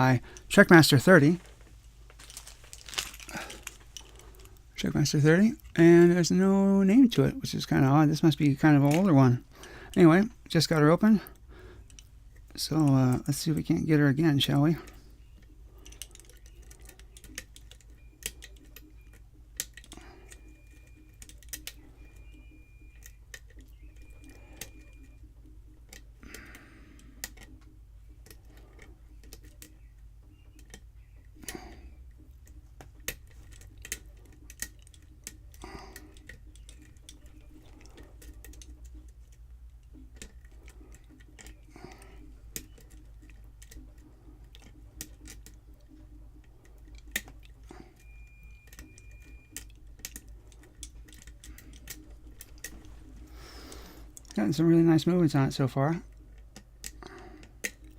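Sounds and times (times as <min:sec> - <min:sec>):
lock pick clicks and scraping: 0:48.6 - 0:53.2.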